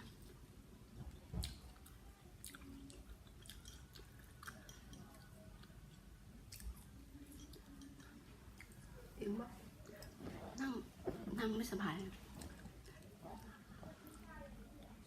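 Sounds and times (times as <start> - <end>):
faint chewing of food: 0.0 - 11.3, 12.0 - 15.0.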